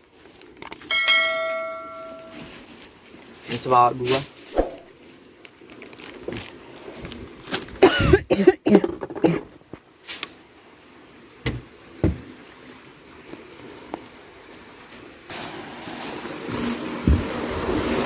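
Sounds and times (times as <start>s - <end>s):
person coughing: 7.8s - 9.5s.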